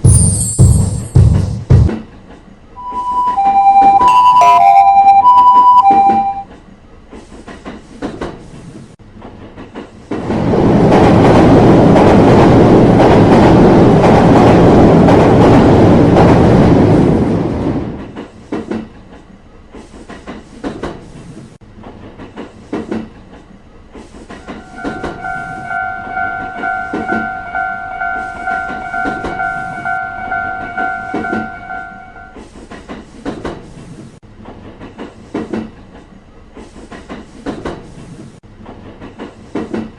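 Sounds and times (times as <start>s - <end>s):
steady pitched tone: 2.8s - 6.4s
train rushing past: 9.0s - 18.6s, 21.6s - 33.2s
train wheels clacking over rail joints: 18.0s - 31.7s, 32.4s - 39.9s.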